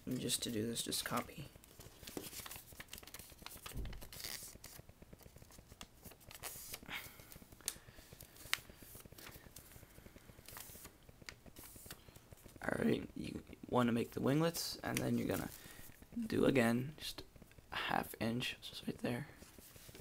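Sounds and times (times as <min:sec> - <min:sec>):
paper rustling and crinkling: 0:00.2 - 0:12.6, 0:14.5 - 0:16.0, 0:19.4 - 0:20.0
paper fold ticks: 0:00.9 - 0:12.6, 0:13.5 - 0:16.2.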